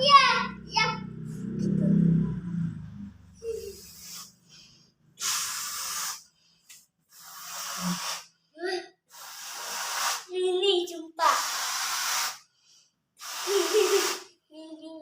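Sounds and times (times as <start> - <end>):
child's voice: 0.0 - 2.5, 3.4 - 4.1, 8.6 - 9.0, 10.3 - 11.9, 13.5 - 15.0
air rushing into balloon: 3.4 - 6.4, 7.1 - 8.4, 9.1 - 10.3, 11.2 - 12.5, 13.2 - 14.3.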